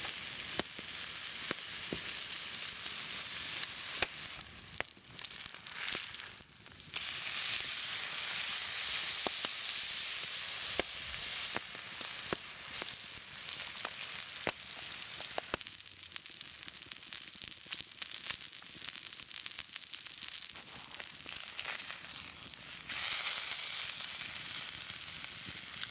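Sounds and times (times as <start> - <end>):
fat popping and crackling: 0.0 - 6.4, 8.8 - 9.6, 13.6 - 15.7, 20.3 - 23.2
food sizzling on hot stone: 0.0 - 25.9.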